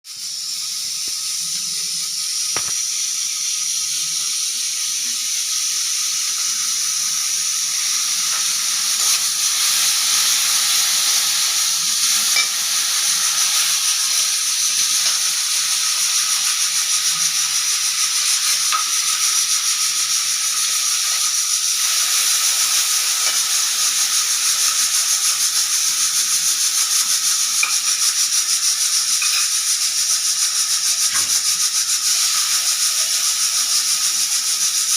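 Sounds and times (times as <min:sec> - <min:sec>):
pressure cooker whistle hissing: 0:00.0 - 0:34.9.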